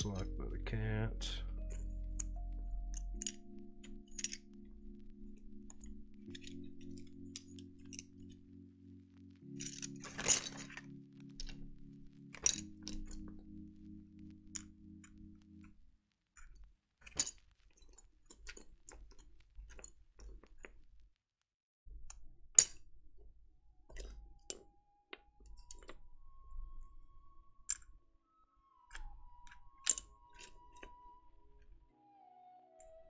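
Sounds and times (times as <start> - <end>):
keycaps clicking and clinking: 1.5 - 8.6, 9.3 - 15.8, 16.4 - 20.9, 23.8 - 28.0, 28.9 - 31.8
faint held tones: 23.9 - 33.0.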